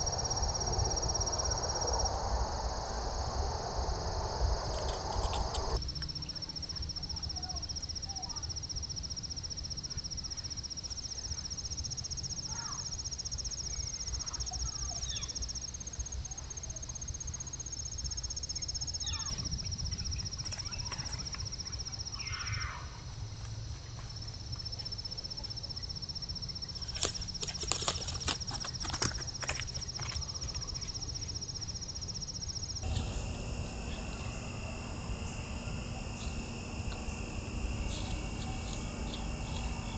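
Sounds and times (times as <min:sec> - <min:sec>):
low outdoor rumble: 0:00.0 - 0:07.8, 0:26.5 - 0:39.9
insects trilling: 0:00.0 - 0:39.9
faint chirps: 0:09.5 - 0:22.9, 0:29.8 - 0:39.9.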